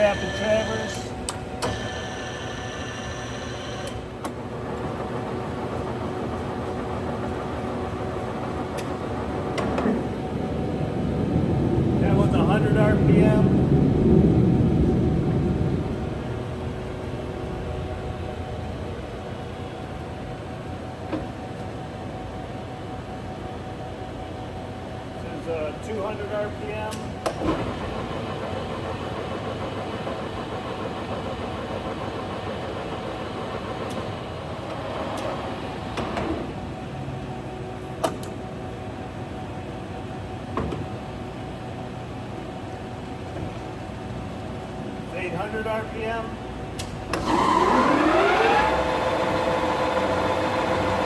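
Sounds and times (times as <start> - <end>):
lathe running: 0.0 - 4.0, 47.2 - 51.0
lathe gearing hum: 0.0 - 12.1, 15.5 - 37.9, 46.3 - 51.0.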